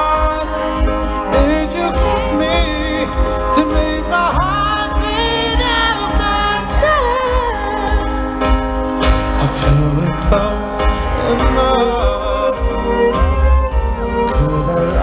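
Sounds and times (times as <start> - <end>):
pop accompaniment with low beat: 0.0 - 15.0
person singing long notes: 9.3 - 15.0.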